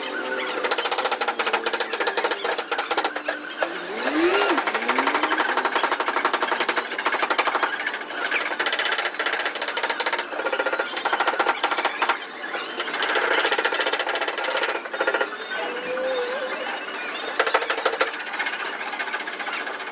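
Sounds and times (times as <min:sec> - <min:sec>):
pneumatic hammer rattling: 0:00.4 - 0:15.5.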